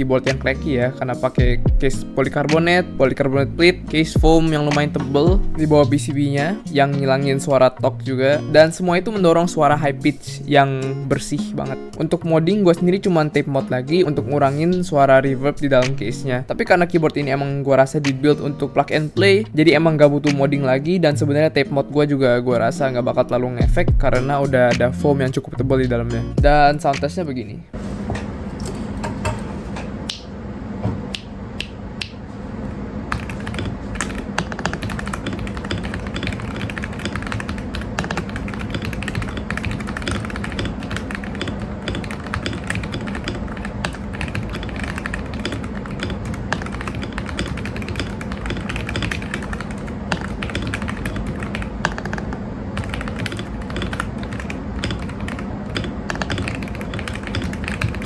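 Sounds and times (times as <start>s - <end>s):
mechanical keyboard typing: 33.1s - 58.0s.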